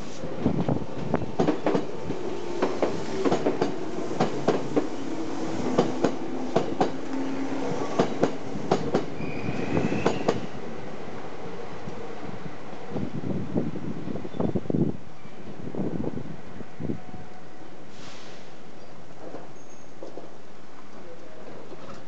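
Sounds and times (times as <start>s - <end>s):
train wheels clacking on rails: 0.9s - 10.5s
high-pitched wheel squeal: 9.2s - 10.3s.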